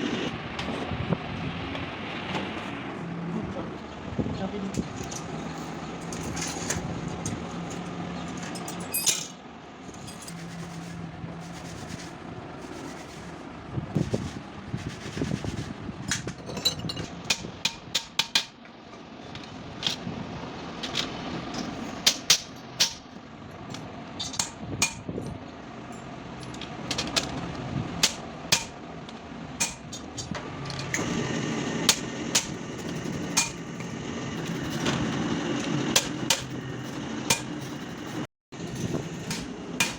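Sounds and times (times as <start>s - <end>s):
steady low hum: 0.0s - 18.1s
hand tools tapping on metal: 16.1s - 18.7s, 29.6s - 31.0s, 31.9s - 34.9s.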